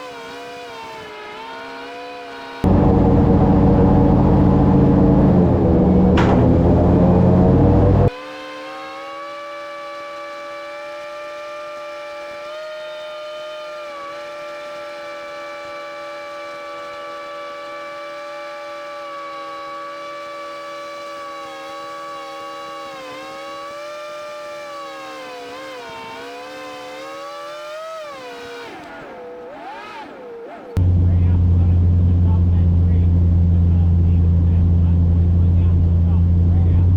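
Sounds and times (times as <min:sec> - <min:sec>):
airboat engine droning: 0:02.6 - 0:08.1, 0:30.8 - 0:36.9.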